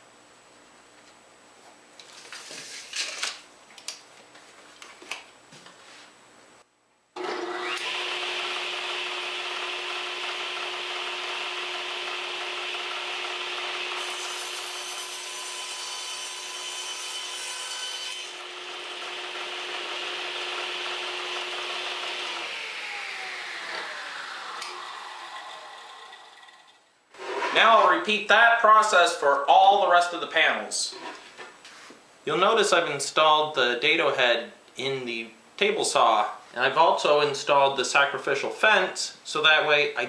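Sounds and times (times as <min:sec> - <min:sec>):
table saw cutting plywood: 0:07.2 - 0:27.9.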